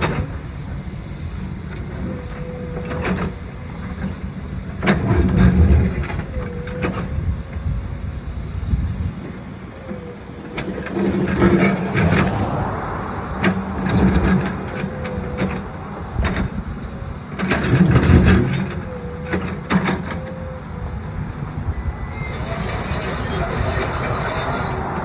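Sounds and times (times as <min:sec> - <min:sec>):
diesel engine revving: 0:09.9 - 0:25.0.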